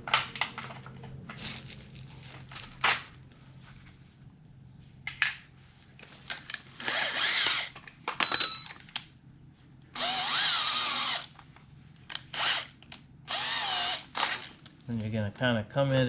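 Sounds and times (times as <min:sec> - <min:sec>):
power drill spinning: 0:06.7 - 0:07.8, 0:10.0 - 0:11.4, 0:12.2 - 0:14.6.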